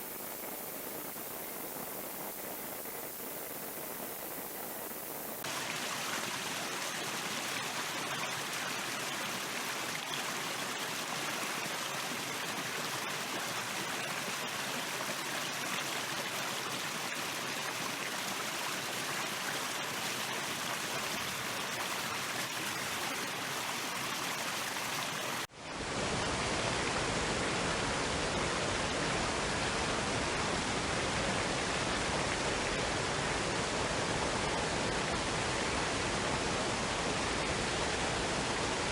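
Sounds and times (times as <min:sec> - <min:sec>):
stream water rushing: 0:05.4 - 0:29.3.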